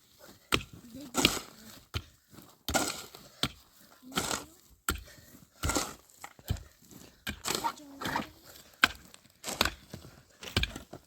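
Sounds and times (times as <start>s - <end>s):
sharp chopping strokes: 5.6s - 6.7s.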